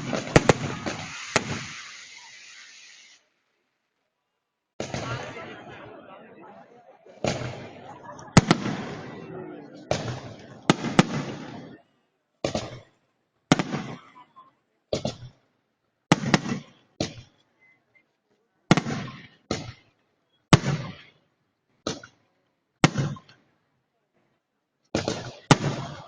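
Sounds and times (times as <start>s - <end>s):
fireworks shells bursting: 0.0s - 3.3s, 7.2s - 11.8s.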